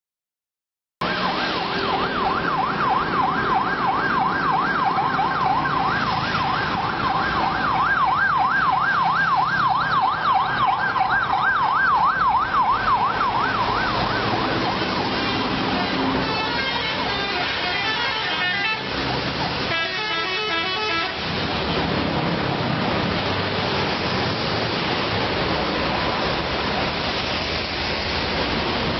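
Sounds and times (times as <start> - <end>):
electronic siren yelping: 1.0 - 21.1
road and engine noise: 1.0 - 28.9.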